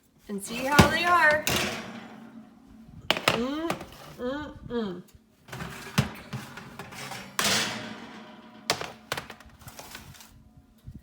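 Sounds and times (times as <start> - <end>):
tray scraping: 0.3 - 4.2, 5.4 - 10.3
baking trays knocking: 0.5 - 2.4, 3.1 - 4.1, 5.5 - 10.0.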